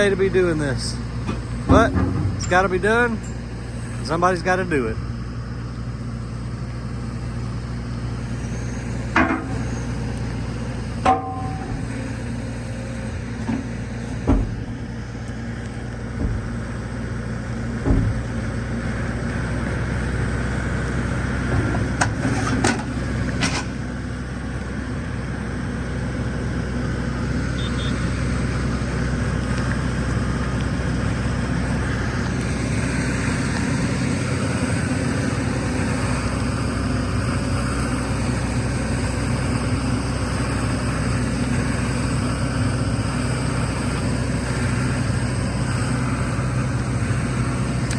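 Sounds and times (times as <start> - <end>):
diesel engine idling: 0.0 - 47.9
sharp metal clanks and knocks: 1.3 - 3.4, 9.1 - 9.9, 11.0 - 12.4.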